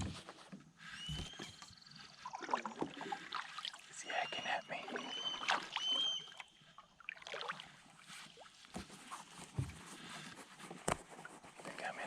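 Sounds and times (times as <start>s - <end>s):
kayak knocks and water sounds: 0.0s - 3.8s, 4.8s - 6.4s, 7.1s - 11.2s
hawk whistled calls: 4.1s - 6.5s.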